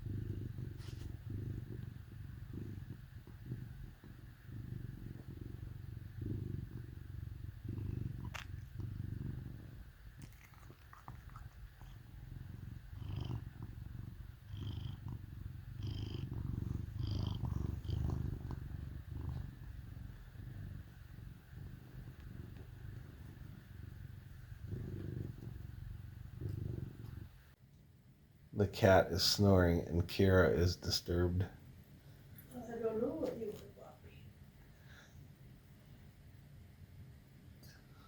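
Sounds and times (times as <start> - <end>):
cat snoring: 0.0 - 27.5.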